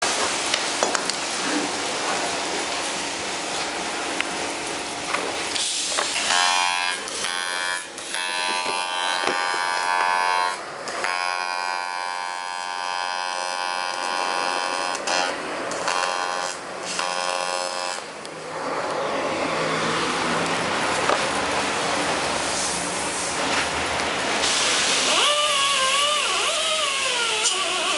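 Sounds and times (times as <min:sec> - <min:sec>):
hiss: 0:05.5 - 0:06.2, 0:22.4 - 0:23.4, 0:24.4 - 0:27.9
buzzing motorised tool: 0:06.1 - 0:18.1.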